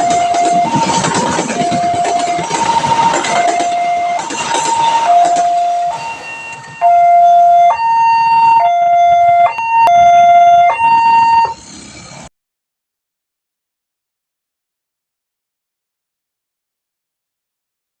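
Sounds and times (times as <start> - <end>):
passing train clatter: 0.0 - 9.7
two-tone crossing warning siren: 0.0 - 11.7.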